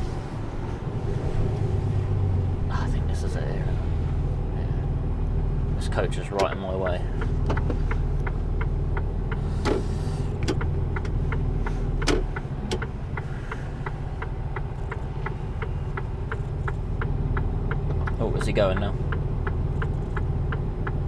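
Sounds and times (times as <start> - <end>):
diesel engine running at low revs: 0.0 - 21.0
regular ticking: 4.4 - 21.0.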